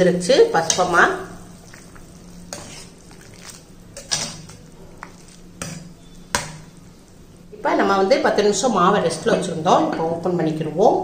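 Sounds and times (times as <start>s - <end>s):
spoon stirring in broth: 0.5s - 6.8s.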